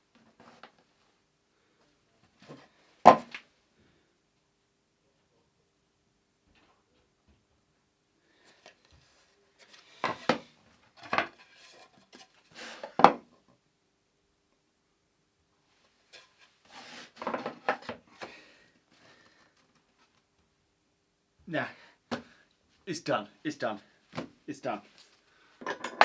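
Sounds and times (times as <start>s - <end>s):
hard objects knocking and clattering: 10.0s - 12.2s, 25.6s - 26.0s.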